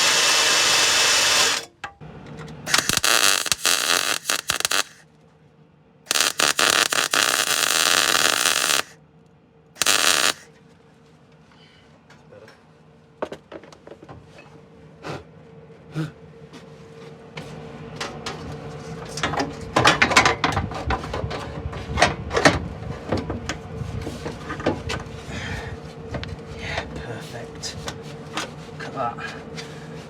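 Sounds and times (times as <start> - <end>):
welder crackling: 0.0 - 1.7, 2.7 - 5.0, 6.1 - 9.0, 9.8 - 10.5
welder hum: 0.0 - 1.7, 2.7 - 5.0, 6.1 - 9.0, 9.8 - 10.5.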